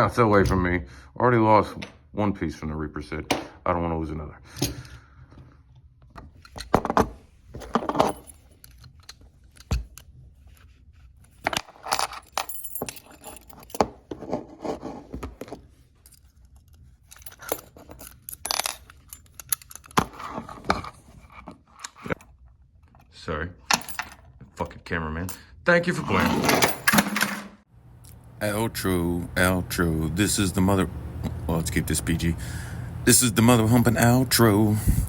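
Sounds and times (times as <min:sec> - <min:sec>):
metallic clinking and rattling: 0:06.4 - 0:10.1, 0:11.3 - 0:14.1, 0:16.0 - 0:20.9.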